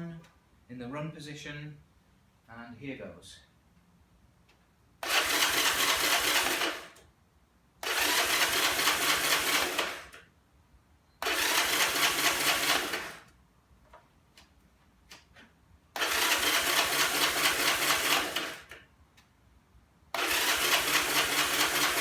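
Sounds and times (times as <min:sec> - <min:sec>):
starter motor cranking engine: 0:05.0 - 0:07.0, 0:07.8 - 0:10.2, 0:11.2 - 0:13.3, 0:16.0 - 0:18.9, 0:20.1 - 0:22.0.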